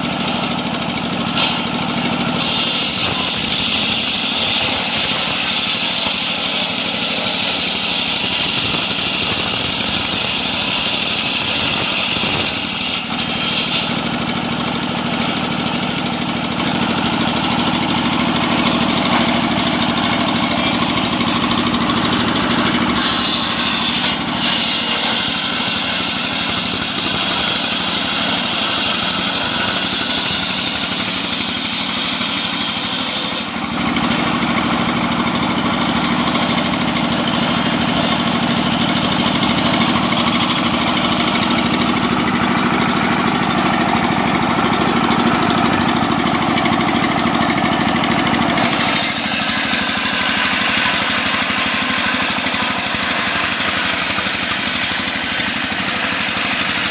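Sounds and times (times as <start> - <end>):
sawmill engine running: 0.0 - 56.9
saw cutting hiss: 2.4 - 14.0, 17.4 - 33.6, 48.5 - 56.9.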